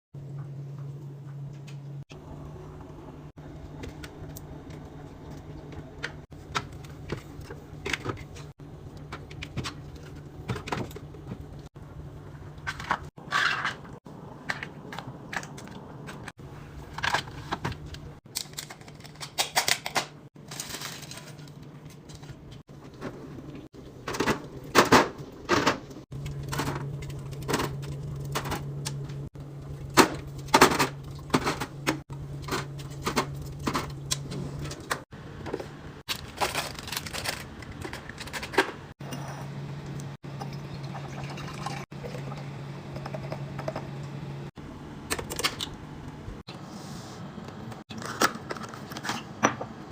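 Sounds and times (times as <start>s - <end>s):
low fridge hum: 0.1s - 49.9s.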